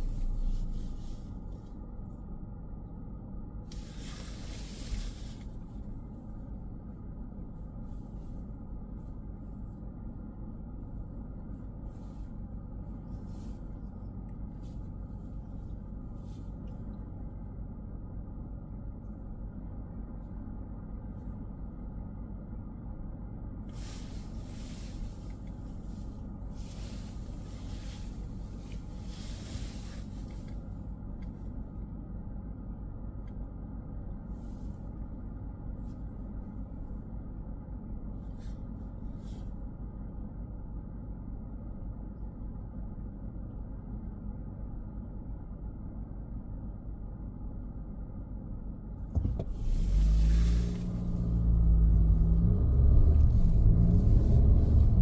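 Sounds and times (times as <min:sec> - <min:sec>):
engine and tyre rumble: 0:00.0 - 0:55.0
road hiss: 0:03.7 - 0:05.8, 0:23.7 - 0:30.7, 0:49.2 - 0:52.6.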